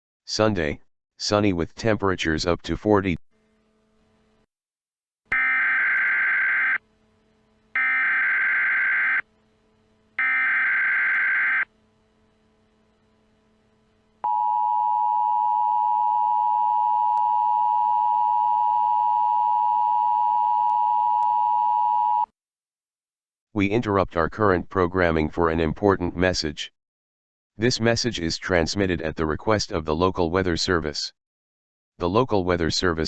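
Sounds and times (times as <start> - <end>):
digital header data bursts: 5.3 - 6.8, 7.8 - 9.2, 10.2 - 11.7
two-tone attention signal: 5.3 - 6.8, 7.8 - 9.3, 10.2 - 11.7.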